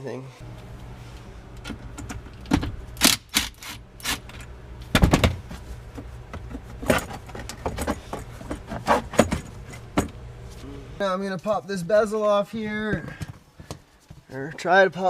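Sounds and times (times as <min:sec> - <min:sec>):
hand tools clicking and clanking: 0:01.5 - 0:05.3, 0:05.9 - 0:10.2.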